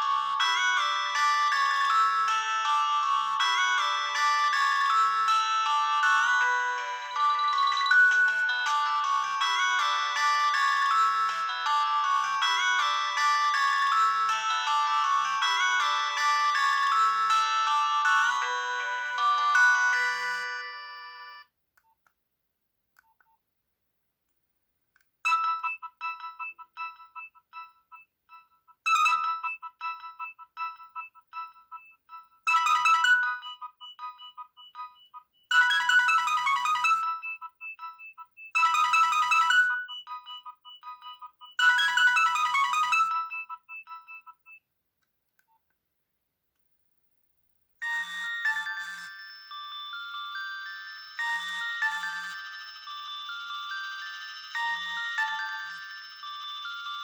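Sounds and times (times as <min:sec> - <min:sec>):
phone ringtone bright repeated notes: 0:00.0 - 0:21.5, 0:25.3 - 0:44.6, 0:47.8 - 0:57.0
phone ringtone chord: 0:00.0 - 0:21.5, 0:25.3 - 0:44.6, 0:47.8 - 0:57.0.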